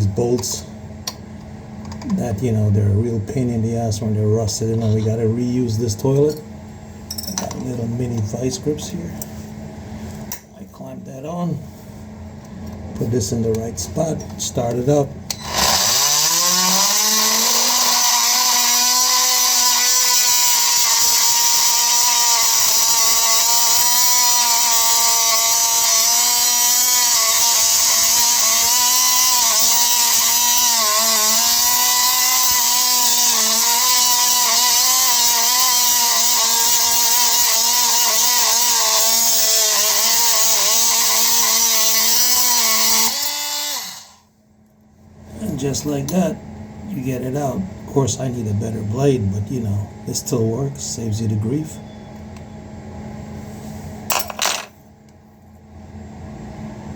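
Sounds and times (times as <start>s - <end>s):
power saw cutting metal bolt: 15.3s - 44.2s, 54.1s - 54.7s.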